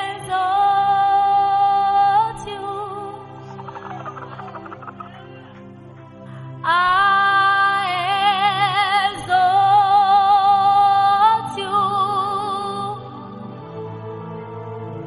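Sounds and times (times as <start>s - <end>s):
woman singing with vibrato: 0.0s - 3.6s, 6.6s - 13.3s
sustained instrumental accompaniment: 1.9s - 7.3s, 11.7s - 15.0s.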